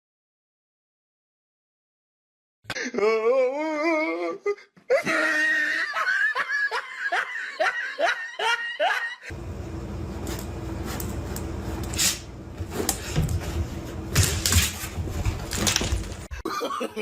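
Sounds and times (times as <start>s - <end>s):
person laughing hard: 4.9s - 9.3s, 16.3s - 17.0s.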